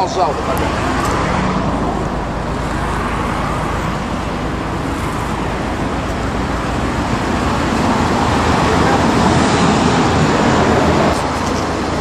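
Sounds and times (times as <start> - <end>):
road traffic: 0.0 - 12.0.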